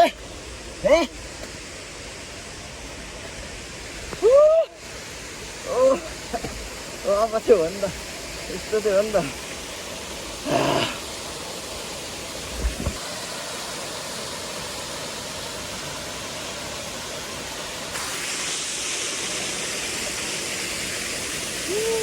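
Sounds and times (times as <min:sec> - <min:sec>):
waterfall rushing: 0:00.0 - 0:22.0
short low thump: 0:12.5 - 0:13.0.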